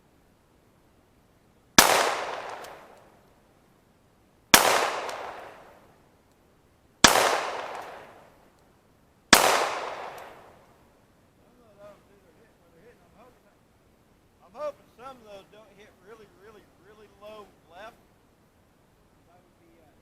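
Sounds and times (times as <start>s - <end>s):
pistol shots with echo: 1.8s - 3.0s, 4.6s - 5.7s, 7.0s - 8.2s, 9.3s - 10.5s.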